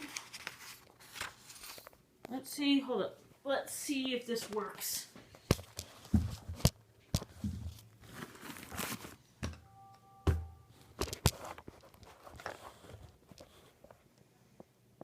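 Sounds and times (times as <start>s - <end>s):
paper rustling and crinkling: 0.0s - 2.0s, 5.4s - 9.2s, 11.0s - 14.0s
faint steady tone: 9.6s - 11.0s.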